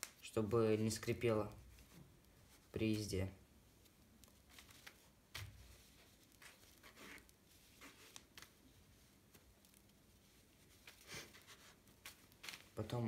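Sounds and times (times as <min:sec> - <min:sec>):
rag wiping rustles: 0:03.7 - 0:12.8.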